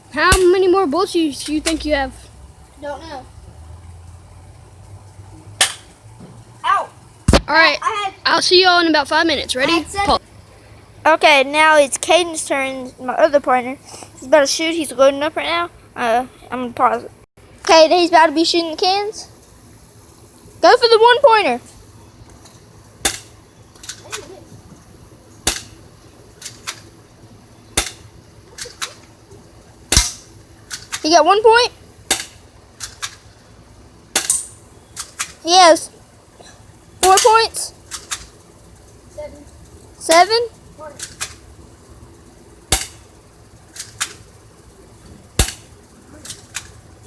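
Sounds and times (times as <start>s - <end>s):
airsoft gun shots: 5.6s - 6.0s, 27.8s - 28.0s, 29.9s - 30.3s, 42.7s - 43.0s, 45.4s - 45.7s.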